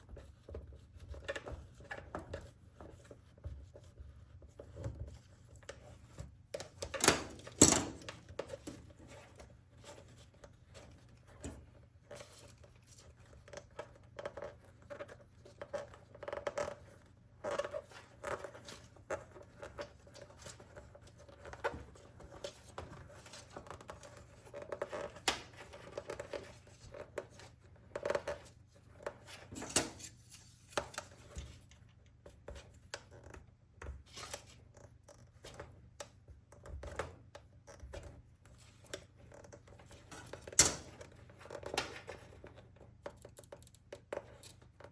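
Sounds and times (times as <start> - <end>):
scraping and crinkling: 0.1 - 36.0.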